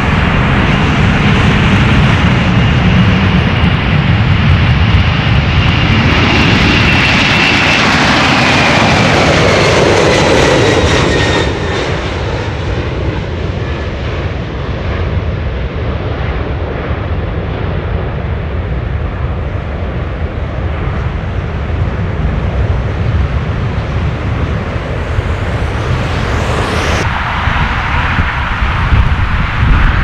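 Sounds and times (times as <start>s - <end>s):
jet engines rumbling: 0.0s - 30.0s.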